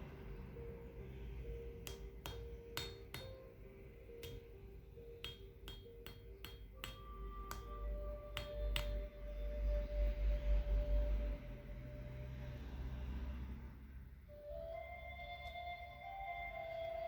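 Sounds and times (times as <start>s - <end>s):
meteorite tapped with hard object: 1.8s - 3.4s, 4.2s - 4.5s, 5.2s - 7.8s, 8.4s - 9.0s.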